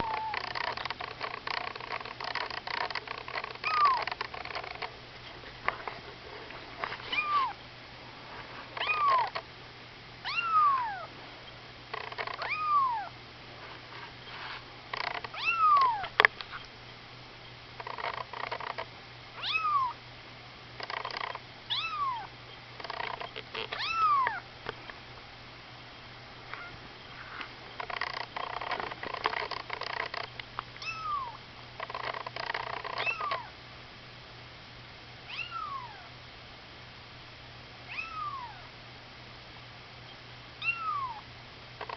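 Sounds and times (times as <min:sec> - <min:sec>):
kitten mewing: 0:00.0 - 0:00.6, 0:03.6 - 0:04.1, 0:07.1 - 0:07.6, 0:08.8 - 0:09.4, 0:10.2 - 0:11.1, 0:12.4 - 0:13.1, 0:15.3 - 0:16.6, 0:19.4 - 0:20.0, 0:21.7 - 0:22.3, 0:23.6 - 0:24.4, 0:30.8 - 0:31.4, 0:33.0 - 0:33.5, 0:35.3 - 0:36.1, 0:37.9 - 0:38.7, 0:40.6 - 0:41.2.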